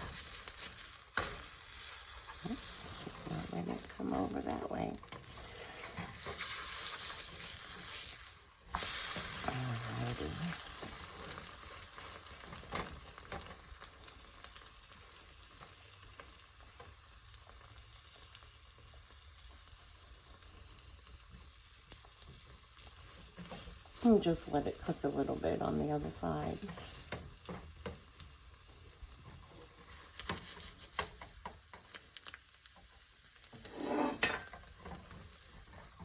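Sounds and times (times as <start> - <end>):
omelette sizzling in a frying pan: 0.0 - 36.0.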